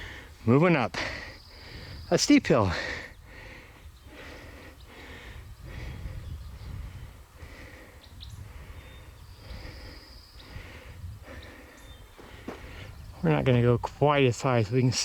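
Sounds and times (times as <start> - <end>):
person breathing hard: 0.0 - 0.4, 2.7 - 13.0.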